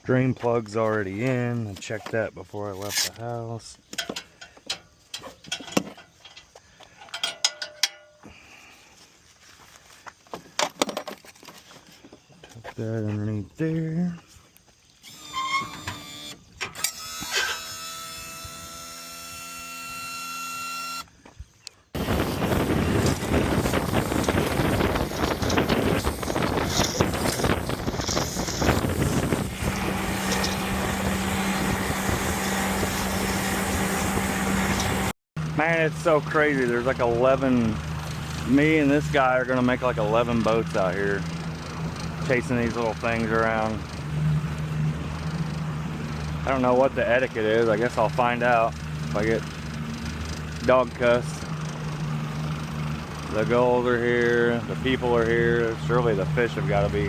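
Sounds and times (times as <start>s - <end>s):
metallic clicks and clanks: 3.9s - 8.2s
wind buffeting microphone: 22.0s - 35.1s
boat motor running: 22.0s - 57.0s.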